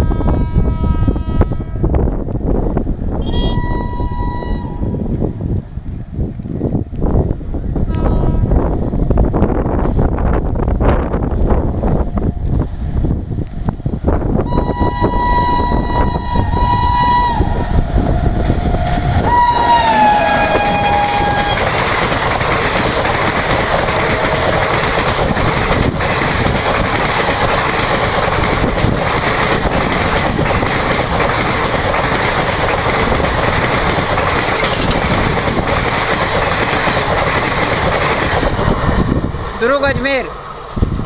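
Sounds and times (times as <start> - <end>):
two-tone locomotive horn: 0.0 - 2.2, 3.2 - 5.2, 7.9 - 8.7, 14.4 - 25.9
train coaches clattering on track: 2.2 - 41.0.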